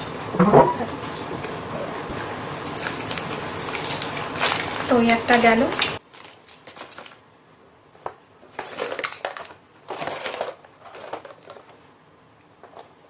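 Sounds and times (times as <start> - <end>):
plastic toys rustling and rattling: 2.7 - 7.2, 8.4 - 11.9.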